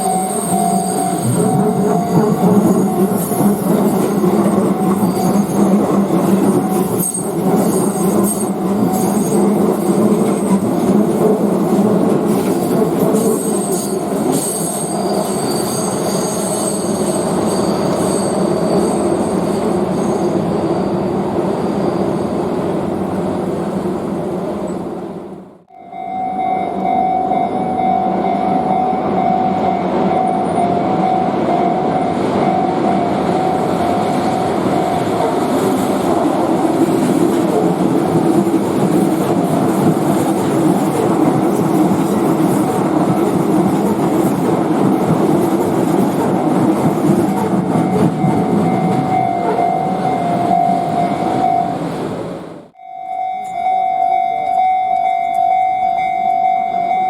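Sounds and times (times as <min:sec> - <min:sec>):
level crossing alarm ringing: 0:00.0 - 0:09.8, 0:25.7 - 0:35.2, 0:47.2 - 0:51.8, 0:52.8 - 0:57.0
train rumbling: 0:00.0 - 0:57.0.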